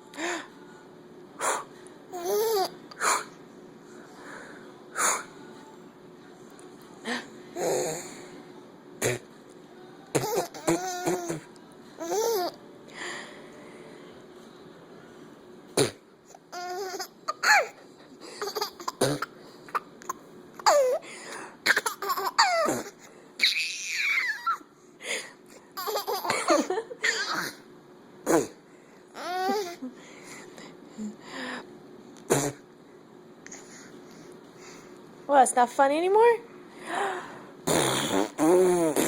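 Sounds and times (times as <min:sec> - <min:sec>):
baby laughing and squealing: 0:16.5 - 0:17.8, 0:21.7 - 0:24.7, 0:29.2 - 0:29.8.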